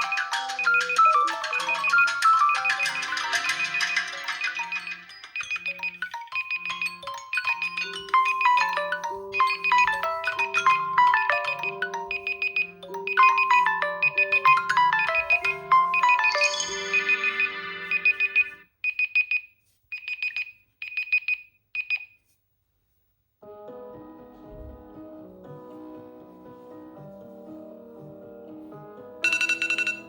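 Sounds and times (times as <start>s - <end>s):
alarm tone: 0.0s - 18.6s
marimba alarm melody: 0.0s - 18.6s
rapid high beeps: 0.0s - 19.4s.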